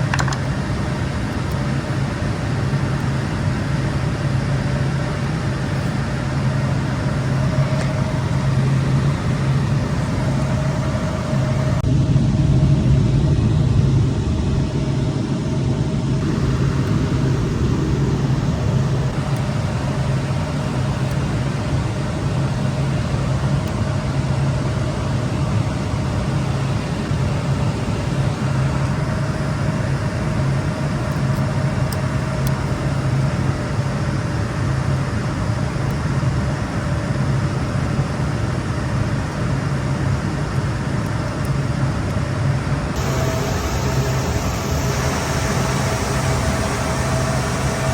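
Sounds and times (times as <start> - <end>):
low hum: 0.0 - 15.0, 15.9 - 23.1, 42.9 - 47.9
cooling fans whirring: 0.0 - 47.9.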